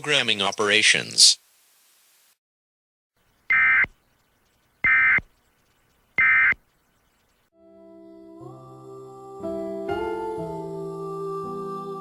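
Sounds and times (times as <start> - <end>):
digital data tone bursts: 3.3 - 7.5.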